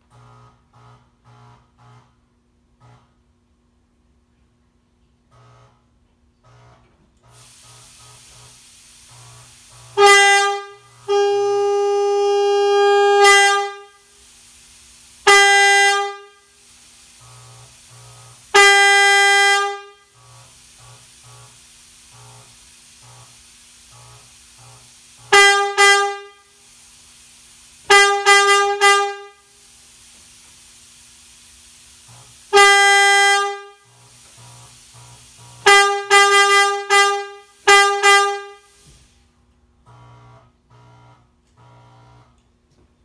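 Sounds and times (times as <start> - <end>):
air horn blasts: 9.8 - 14.3, 15.2 - 16.7, 17.8 - 20.4, 25.2 - 26.7, 27.8 - 29.7, 32.5 - 38.8.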